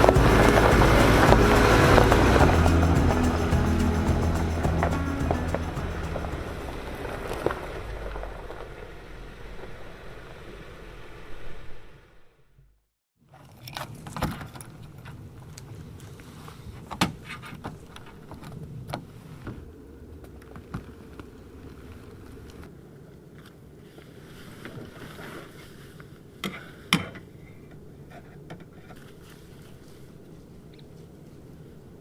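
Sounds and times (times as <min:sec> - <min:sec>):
low engine rumble: 0:00.0 - 0:11.3.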